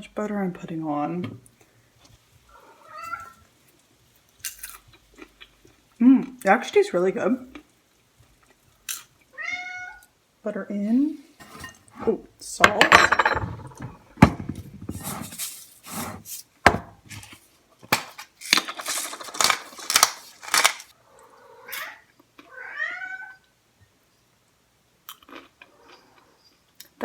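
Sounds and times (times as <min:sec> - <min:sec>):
cat meowing: 0:02.5 - 0:03.4, 0:09.3 - 0:10.1, 0:21.3 - 0:23.5
crunching and rattling: 0:17.9 - 0:20.9.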